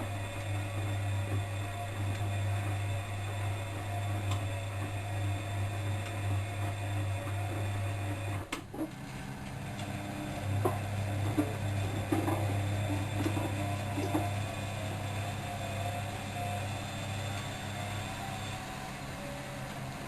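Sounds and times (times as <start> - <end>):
washing machine motor humming: 0.0 - 20.0.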